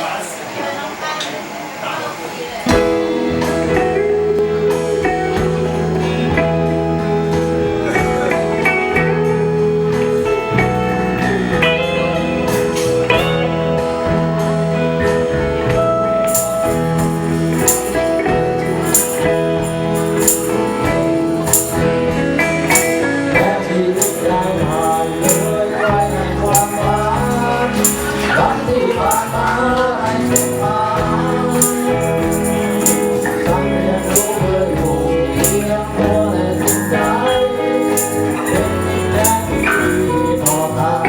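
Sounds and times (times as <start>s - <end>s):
instrumental band music: 2.7s - 41.0s
high percussion beat: 16.3s - 41.0s.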